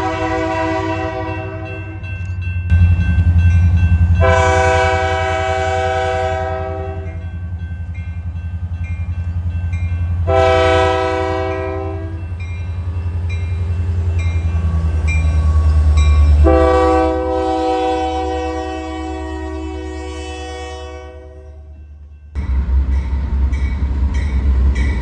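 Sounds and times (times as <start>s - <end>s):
train air horn blasts: 0.0s - 2.0s, 4.2s - 7.2s, 10.2s - 12.2s, 16.3s - 21.7s
diesel engine throbbing: 2.7s - 6.2s.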